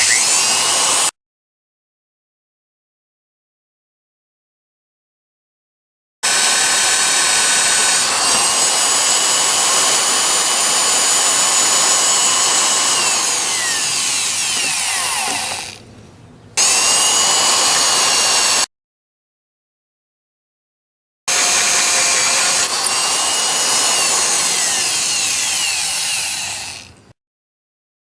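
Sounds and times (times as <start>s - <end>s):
power tool motor whining: 0.0s - 1.1s, 6.2s - 15.9s, 16.6s - 18.7s, 21.3s - 27.0s.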